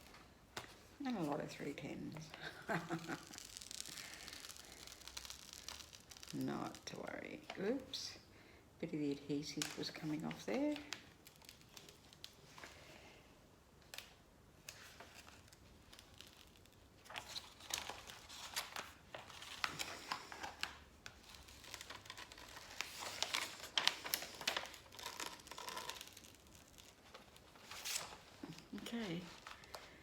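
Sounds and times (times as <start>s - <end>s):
canvas and plastic crinkling: 15.2s - 30.0s.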